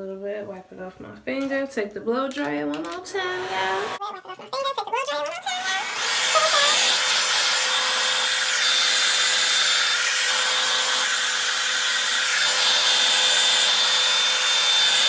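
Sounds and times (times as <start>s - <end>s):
blow dryer running on high: 3.3s - 4.0s, 5.5s - 15.0s.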